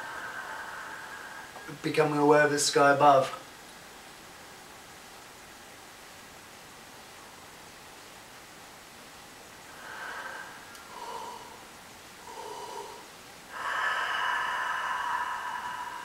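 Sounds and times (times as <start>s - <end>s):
person breathing: 0.0s - 1.8s, 9.7s - 16.0s.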